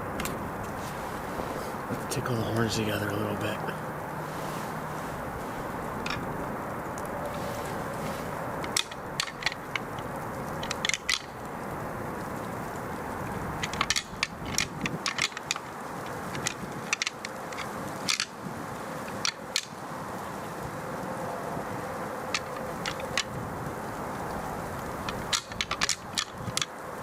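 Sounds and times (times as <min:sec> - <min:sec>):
antlers clacking together: 0:06.0 - 0:06.3, 0:08.6 - 0:11.4, 0:13.6 - 0:18.4, 0:22.3 - 0:23.4, 0:25.0 - 0:26.7.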